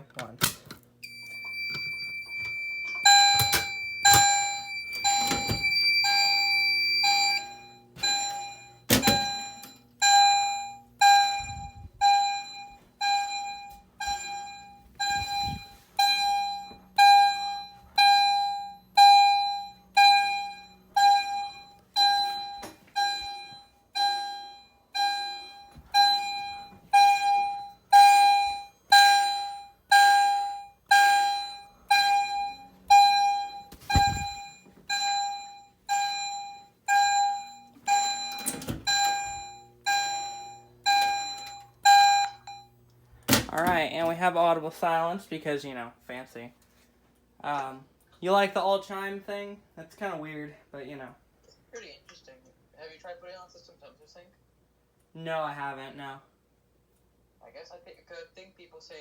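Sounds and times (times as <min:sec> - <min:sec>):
electronic alarm chime: 0:01.0 - 0:42.8.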